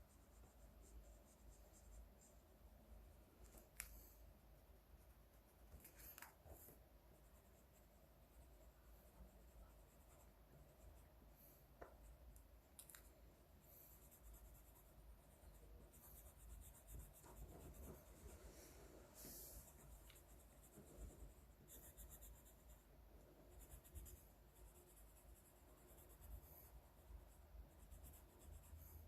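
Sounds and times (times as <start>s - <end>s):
drawing tool scratching paper: 13.9s - 18.4s.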